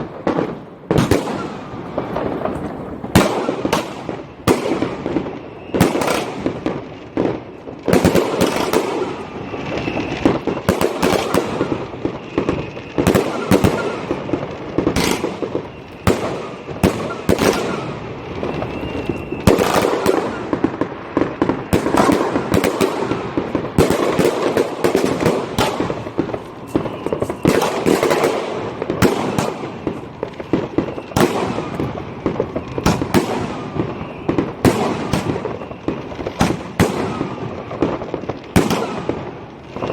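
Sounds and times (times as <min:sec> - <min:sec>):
firecrackers crackling: 0:00.0 - 0:39.9
fireworks bangs echoing: 0:00.0 - 0:39.9.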